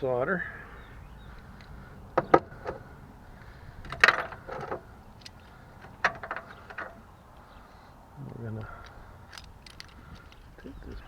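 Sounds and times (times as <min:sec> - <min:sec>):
hand tools clicking and clattering: 0:03.8 - 0:07.1, 0:08.7 - 0:10.6.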